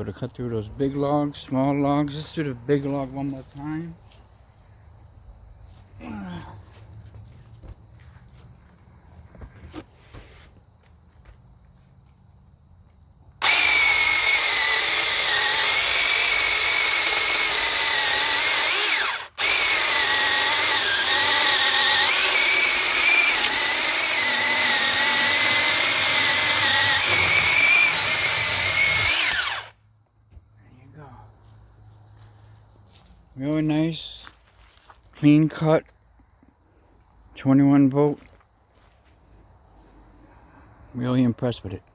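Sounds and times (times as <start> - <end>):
chainsaw cutting log: 13.4 - 29.8.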